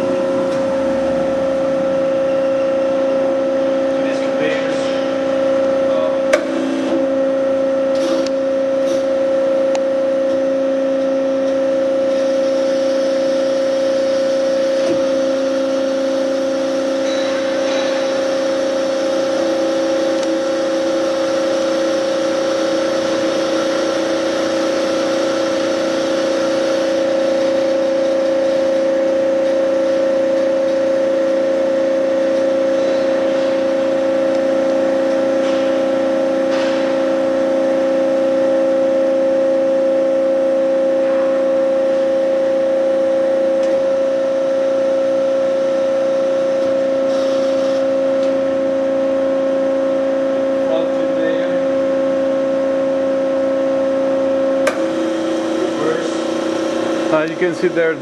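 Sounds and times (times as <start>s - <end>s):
bandsaw running: 54.6s - 58.0s.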